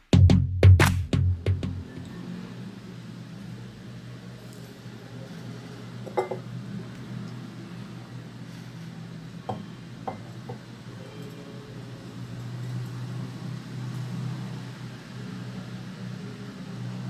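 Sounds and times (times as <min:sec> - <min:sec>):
tableware clinking: 0:06.0 - 0:06.5, 0:09.5 - 0:10.6.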